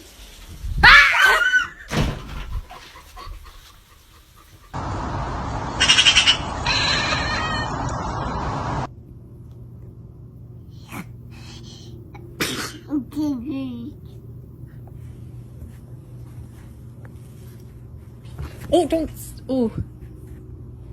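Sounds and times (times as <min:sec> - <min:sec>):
steady noise: 0:04.8 - 0:08.9
cat meowing: 0:05.8 - 0:08.1.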